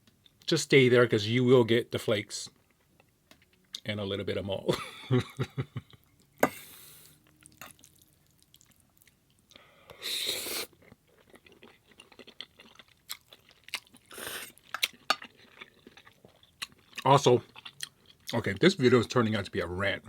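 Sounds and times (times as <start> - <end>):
person chewing food: 5.8 - 18.4.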